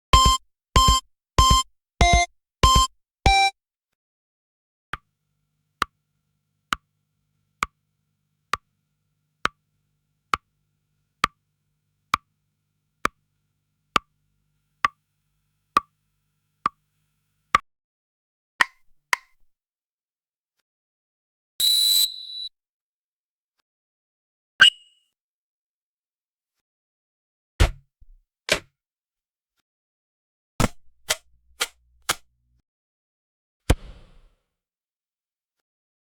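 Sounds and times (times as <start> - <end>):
clock-like ticking: 0.2 - 3.5.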